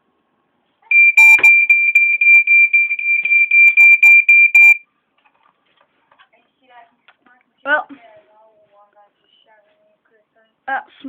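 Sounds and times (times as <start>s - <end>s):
smoke alarm high tone: 0.9s - 4.8s.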